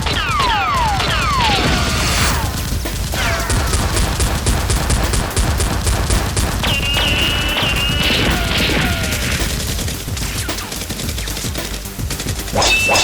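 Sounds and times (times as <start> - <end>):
rapid gunshots: 0.0 - 13.0
falling whistles: 0.2 - 4.4, 6.5 - 10.8, 12.5 - 13.0
music with steady beat: 2.2 - 13.0.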